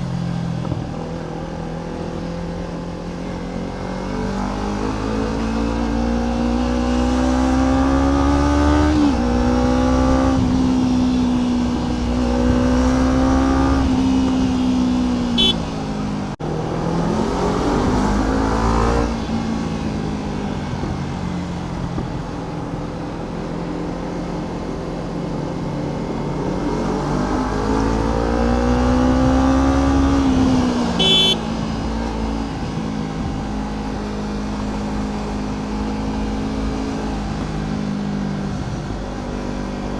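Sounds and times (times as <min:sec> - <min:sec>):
motorcycle engine accelerating: 0:00.0 - 0:39.9
high-pitched beeps: 0:31.0 - 0:31.4.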